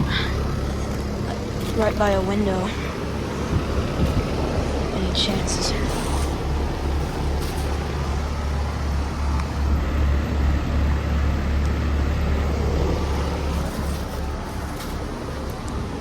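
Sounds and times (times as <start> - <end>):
fans rushing: 0.0 - 9.7
compressor hum: 0.0 - 16.0.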